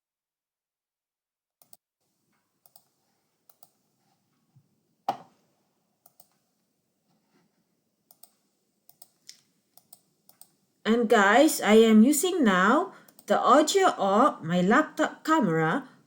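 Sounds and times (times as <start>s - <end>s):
computer mouse clicks: 1.6s - 1.8s, 2.6s - 3.8s, 6.0s - 6.4s, 8.1s - 10.6s, 13.0s - 13.3s.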